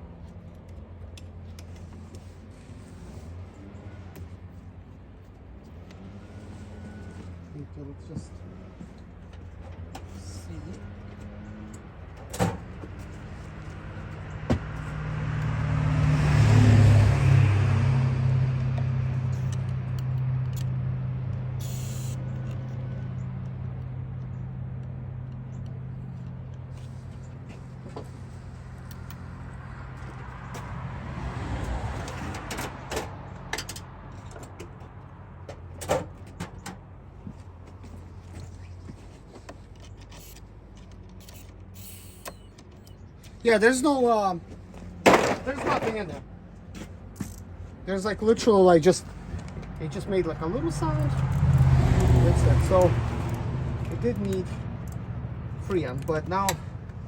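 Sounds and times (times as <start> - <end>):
vehicle passing by: 5.7 - 9.2, 10.1 - 35.5, 46.0 - 57.0.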